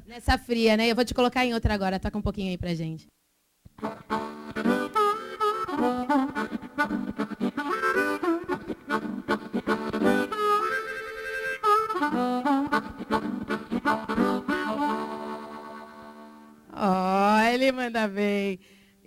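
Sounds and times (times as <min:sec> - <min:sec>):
blues harmonica playing: 0:03.8 - 0:16.7.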